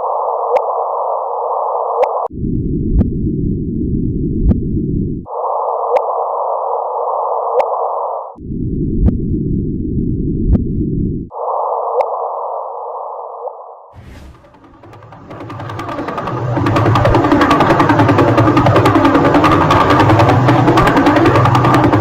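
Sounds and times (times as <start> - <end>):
sharp electronic ticks: 14.6 - 22.0.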